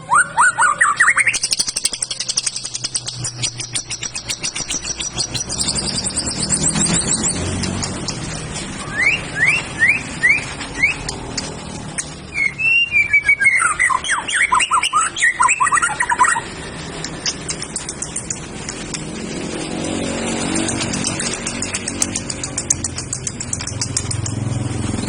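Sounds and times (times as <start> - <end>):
bird whistling song: 0.0 - 11.2, 12.0 - 18.4.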